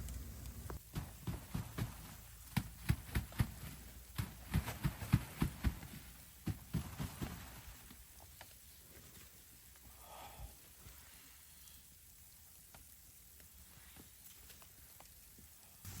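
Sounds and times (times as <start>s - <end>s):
soft thumps and knocks: 0.7s - 7.6s.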